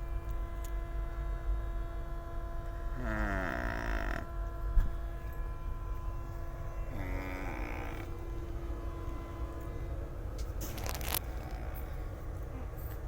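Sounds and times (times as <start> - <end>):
man snoring: 2.9 - 4.3, 6.9 - 9.4
train carriage rumble: 4.3 - 13.0.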